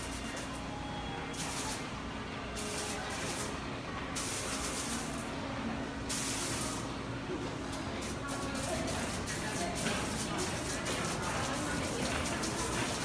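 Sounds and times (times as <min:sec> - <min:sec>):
fountain spray hissing: 0:08.3 - 0:13.0.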